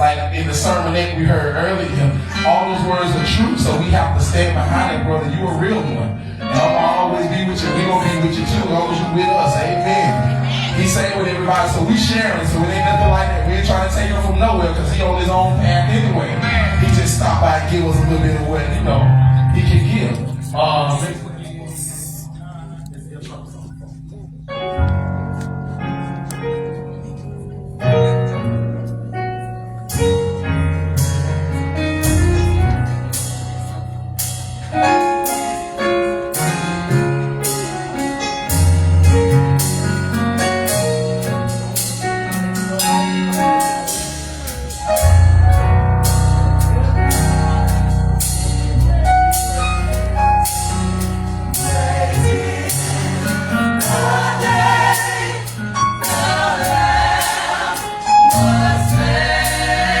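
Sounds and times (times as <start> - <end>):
heavy bass line: 0.0 - 6.5, 7.3 - 60.0
keyboard chords: 0.0 - 60.0
voices: 46.7 - 60.0.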